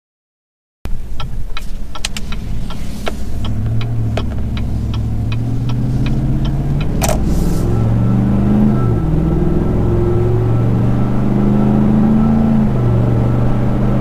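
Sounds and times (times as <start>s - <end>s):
regular ticking: 0.9s - 9.3s
truck engine accelerating: 0.9s - 14.0s.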